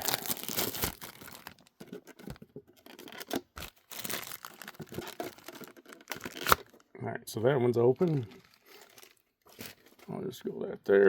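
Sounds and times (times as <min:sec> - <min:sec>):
plastic wrapping tearing and crinkling: 0:00.0 - 0:06.9, 0:07.9 - 0:09.9.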